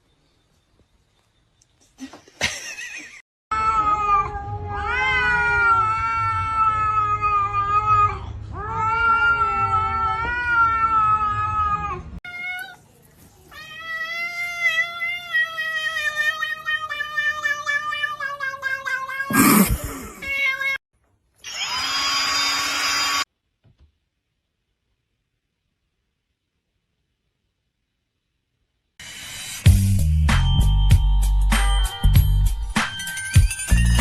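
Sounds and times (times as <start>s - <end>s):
cats yowling: 3.6s - 12.8s, 13.5s - 20.8s.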